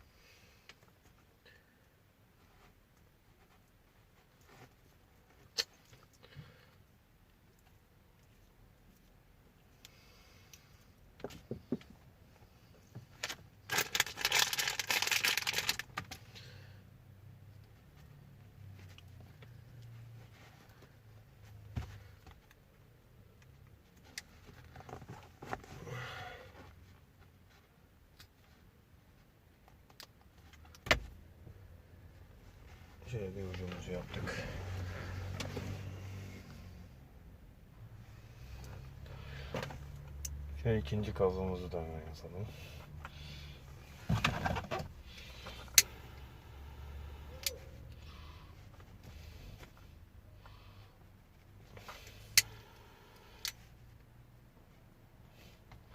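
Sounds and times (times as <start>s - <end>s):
hands handling car wiring: 2.4s - 16.5s, 17.5s - 35.8s, 42.8s - 46.4s, 47.2s - 54.1s.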